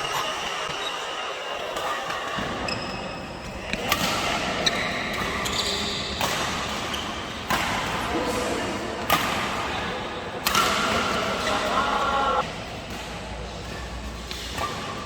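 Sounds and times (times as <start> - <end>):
steady background noise: 0.0 - 15.0
racket hitting shuttlecock: 3.5 - 15.0.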